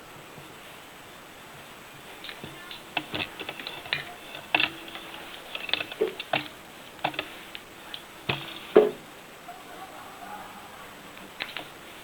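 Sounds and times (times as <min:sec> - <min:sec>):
tool clicks and knocks: 0:02.3 - 0:07.6, 0:08.3 - 0:09.0.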